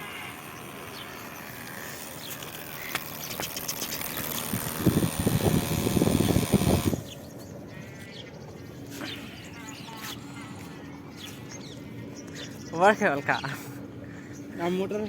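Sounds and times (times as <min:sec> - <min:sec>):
small motor rattling: 0:00.0 - 0:07.2.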